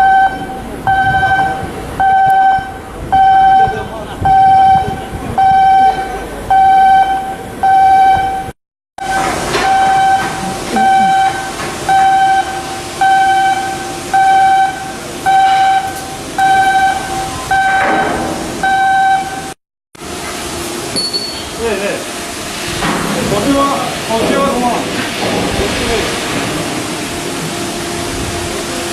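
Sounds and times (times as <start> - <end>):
electronic warning beeps: 0.0 - 19.6
shipyard work noise: 0.0 - 28.9.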